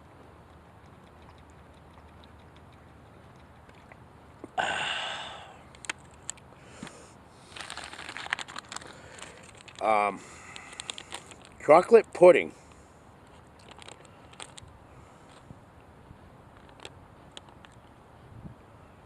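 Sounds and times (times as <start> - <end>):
plastic crinkling: 7.4 - 9.9, 10.5 - 11.6, 13.6 - 14.7
plastic packaging rustling: 7.4 - 9.9, 10.6 - 11.6, 13.6 - 14.7.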